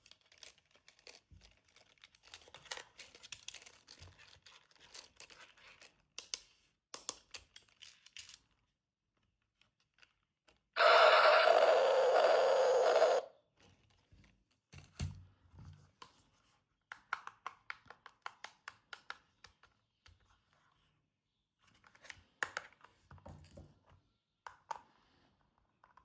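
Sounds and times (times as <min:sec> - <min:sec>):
loud hissing noise: 0:10.8 - 0:13.2
toy packaging opened: 0:10.8 - 0:13.3.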